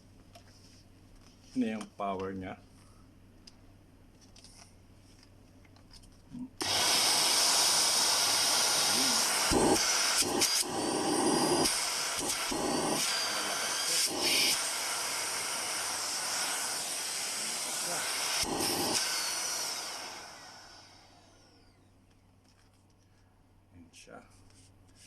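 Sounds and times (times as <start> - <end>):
stick vacuum cleaner running: 6.6 - 21.8.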